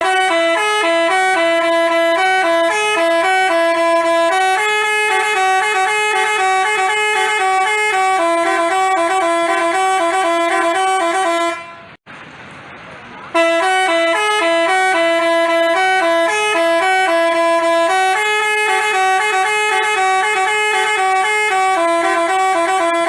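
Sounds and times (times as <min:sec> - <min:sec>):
multi-tone bus horn tune: 0:00.0 - 0:12.0, 0:13.3 - 0:23.0.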